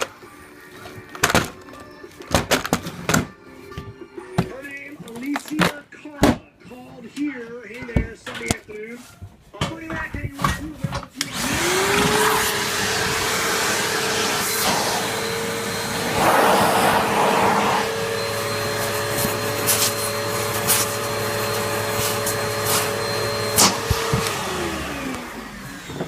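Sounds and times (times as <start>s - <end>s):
vacuum cleaner motor running: 11.2s - 26.0s.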